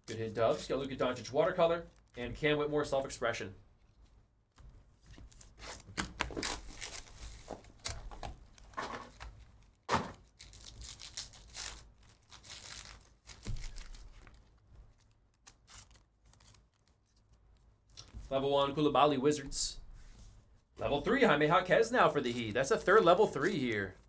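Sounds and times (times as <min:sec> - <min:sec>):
wrappers torn and crinkled: 0:05.3 - 0:17.3.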